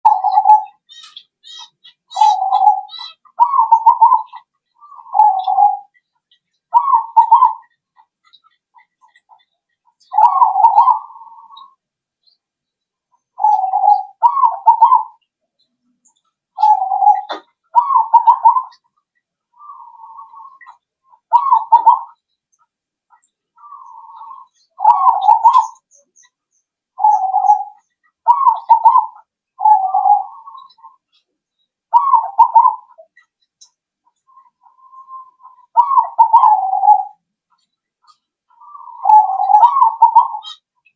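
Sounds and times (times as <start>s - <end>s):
dove cooing: 0.0s - 6.0s, 6.7s - 7.8s, 8.9s - 11.8s, 13.4s - 15.2s, 16.6s - 18.9s, 19.6s - 22.2s, 23.6s - 26.0s, 27.0s - 31.2s, 31.9s - 33.2s, 34.3s - 37.2s, 38.1s - 40.6s.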